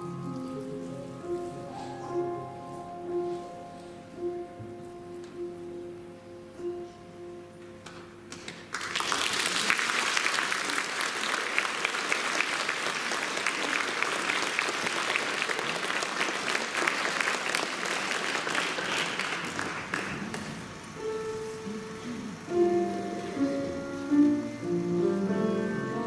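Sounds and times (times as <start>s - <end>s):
held music notes: 0.0s - 8.7s, 20.0s - 26.0s
audience applauding: 8.3s - 20.9s.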